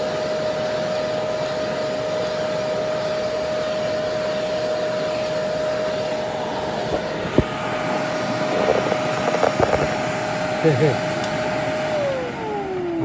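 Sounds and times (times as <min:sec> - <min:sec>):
vacuum hissing and whining: 0:00.0 - 0:13.0.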